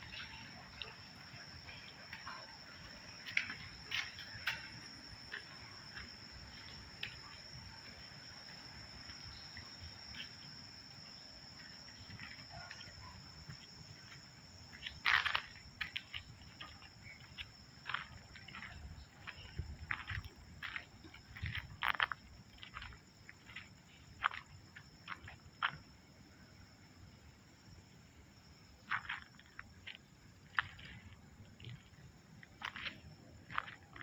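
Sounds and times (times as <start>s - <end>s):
high-pitched insect trill: 0.0s - 34.0s
crackling rustle: 12.0s - 25.4s, 28.8s - 34.0s.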